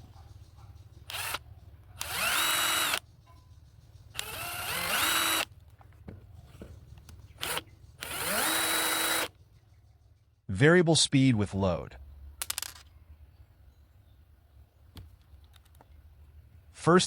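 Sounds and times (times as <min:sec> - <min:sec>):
impact driver motor whine: 0:01.1 - 0:01.4, 0:02.0 - 0:03.0, 0:04.2 - 0:05.5, 0:07.4 - 0:09.3.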